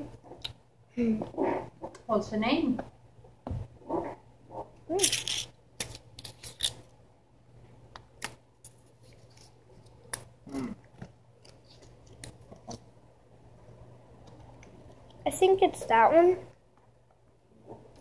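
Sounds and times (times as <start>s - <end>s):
hum-like vocal sound: 10.5s - 10.9s.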